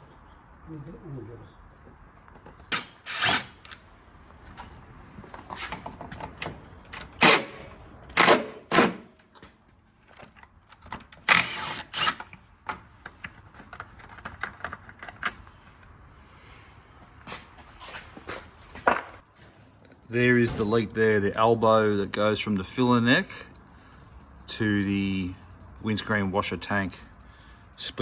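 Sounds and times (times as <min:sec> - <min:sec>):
loud rasping bursts: 0:02.7 - 0:03.8, 0:07.2 - 0:09.1, 0:11.2 - 0:12.3
clicks and clatters of tools: 0:09.2 - 0:15.9.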